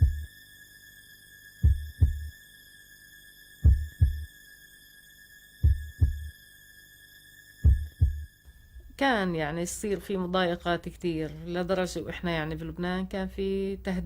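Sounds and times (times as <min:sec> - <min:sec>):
heartbeat thumps: 0:00.0 - 0:00.3, 0:01.6 - 0:02.3, 0:03.6 - 0:04.3, 0:05.6 - 0:06.3, 0:07.6 - 0:08.3
steady high-pitched tone: 0:00.0 - 0:10.8.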